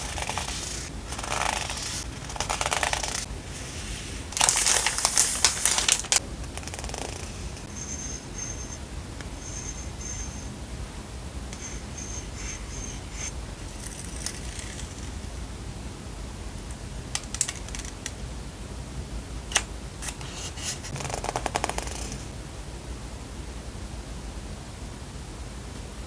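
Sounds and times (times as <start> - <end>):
paper rustling and crinkling: 0.0 - 7.7.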